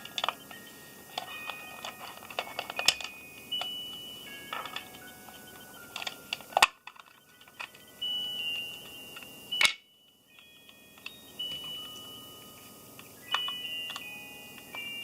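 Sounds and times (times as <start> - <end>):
electronic beeping tones: 3.2 - 6.4.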